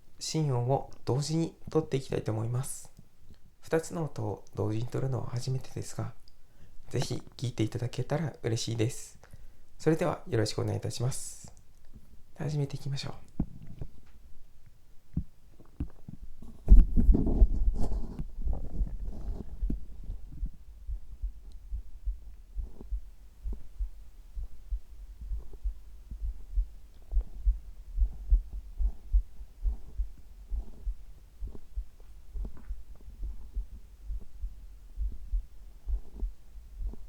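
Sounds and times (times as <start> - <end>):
heartbeat thumps: 15.1 - 37.0.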